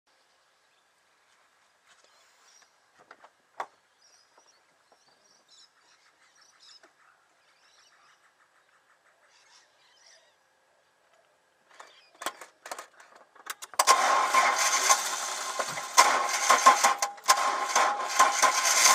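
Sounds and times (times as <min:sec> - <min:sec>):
faint bird chirps: 0:02.0 - 0:02.8, 0:03.9 - 0:12.4.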